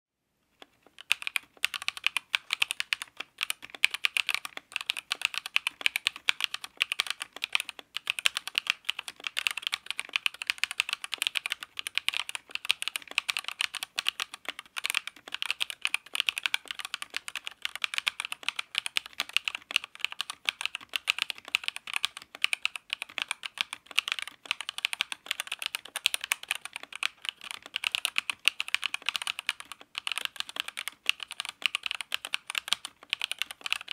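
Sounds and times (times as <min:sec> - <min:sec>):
mechanical keyboard typing: 0:00.6 - 0:33.9.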